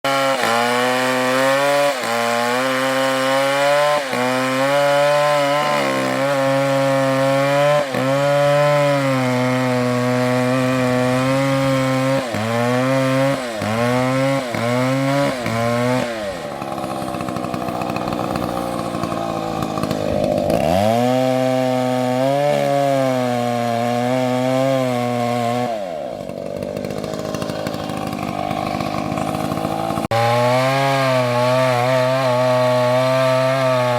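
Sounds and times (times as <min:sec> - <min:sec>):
chainsaw engine revving: 0:00.0 - 0:33.9.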